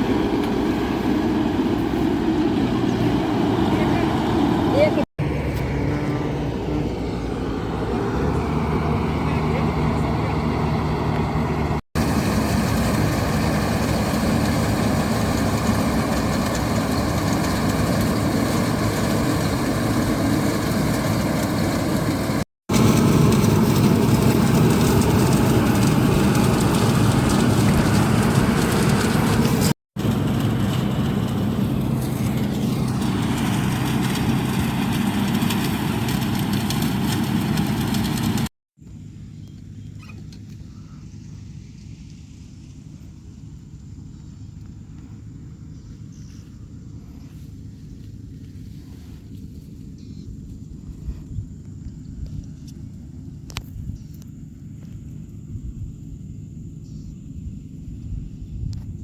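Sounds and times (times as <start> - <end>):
heavy diesel engine running: 0.0 - 38.5.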